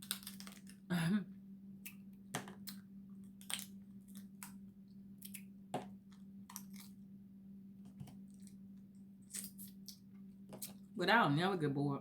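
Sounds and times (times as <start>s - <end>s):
crab shell cracking and chewing: 0.0s - 0.9s, 1.8s - 4.6s, 6.4s - 7.0s
steady low hum: 0.0s - 12.0s.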